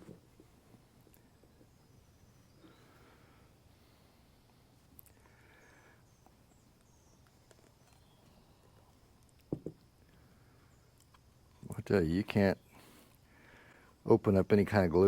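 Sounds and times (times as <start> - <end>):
soft knocks of objects handled: 9.4 - 9.9.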